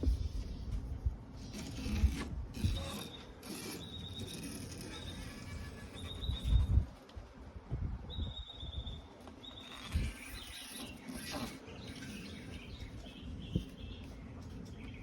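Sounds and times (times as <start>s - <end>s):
bird chirping: 2.9s - 6.8s, 8.1s - 15.0s.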